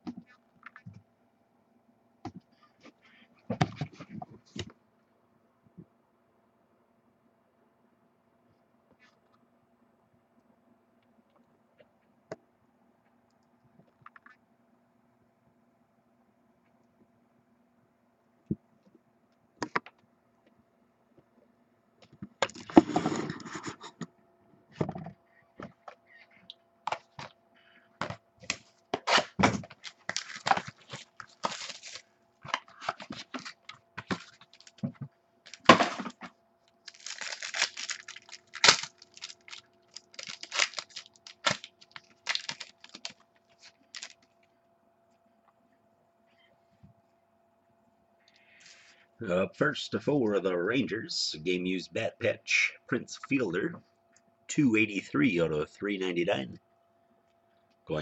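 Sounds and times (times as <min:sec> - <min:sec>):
cards clicking and scraping: 0:28.0 - 0:34.8
card pack tearing: 0:28.5 - 0:32.0, 0:35.5 - 0:36.2, 0:36.8 - 0:44.2.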